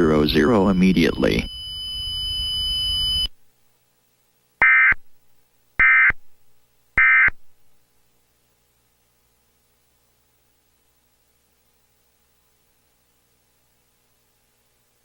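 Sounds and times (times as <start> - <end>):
harsh digital data bursts: 0.0 - 3.2
steady hiss with faint tones: 0.0 - 15.0.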